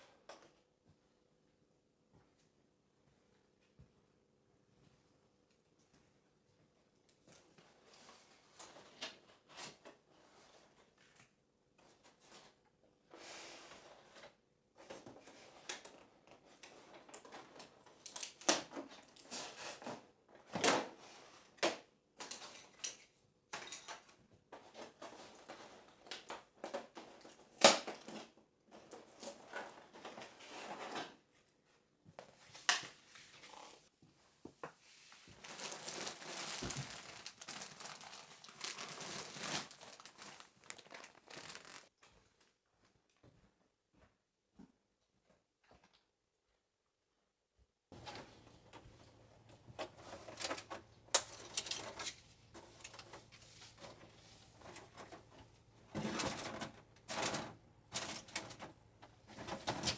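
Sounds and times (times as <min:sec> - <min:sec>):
rustling: 0:35.0 - 0:41.9, 0:48.0 - 0:59.9
paper or plastic crinkling: 0:35.3 - 0:41.9, 0:49.8 - 0:55.2.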